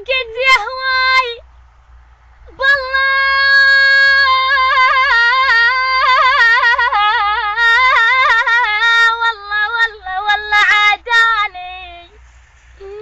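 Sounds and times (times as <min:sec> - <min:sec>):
high voice singing wordless melody: 0:00.0 - 0:01.4, 0:02.5 - 0:12.2, 0:12.8 - 0:13.0.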